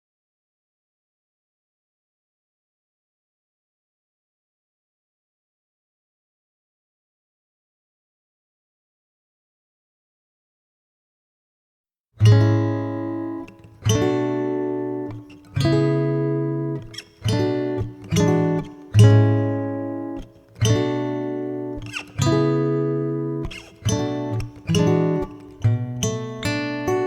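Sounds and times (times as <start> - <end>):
acoustic guitar chords strummed: 12.2 - 27.0.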